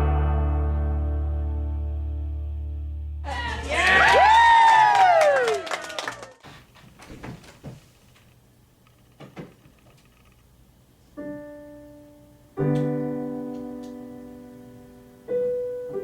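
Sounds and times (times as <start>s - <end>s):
piano chords ringing: 0.0s - 2.6s, 11.2s - 16.0s.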